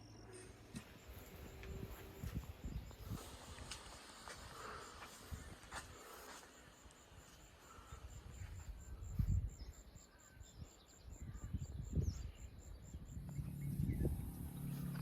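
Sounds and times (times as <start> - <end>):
insect chirping: 0.0 - 15.0
low steady hum: 6.8 - 15.0.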